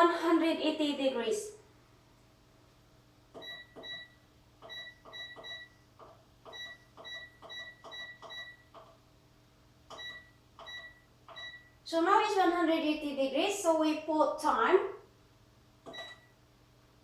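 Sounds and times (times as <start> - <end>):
short high beeps: 15.9 - 16.3.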